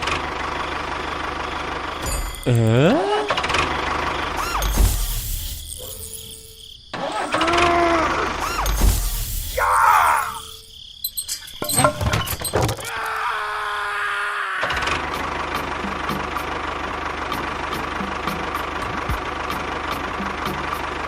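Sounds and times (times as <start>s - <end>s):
engine running steadily: 0.0s - 9.0s, 14.7s - 21.0s.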